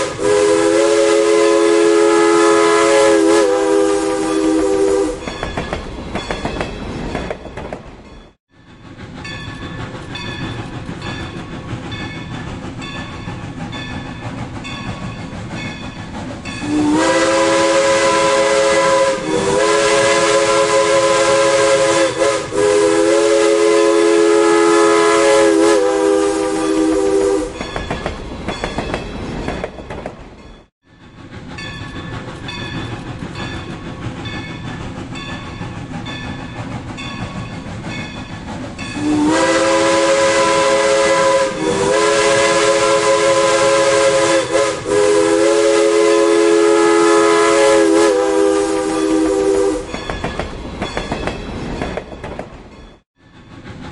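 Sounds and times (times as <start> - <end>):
steam locomotive whistle blasts: 0.0 - 5.4, 16.6 - 27.7, 38.9 - 50.2
train wheels clattering over rails: 5.2 - 21.8, 27.5 - 44.6, 49.8 - 53.9.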